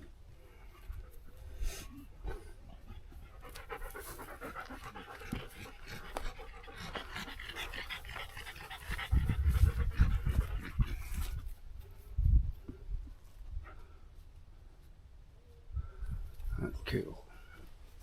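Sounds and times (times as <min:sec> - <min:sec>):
dog panting rapidly: 0:02.7 - 0:11.4.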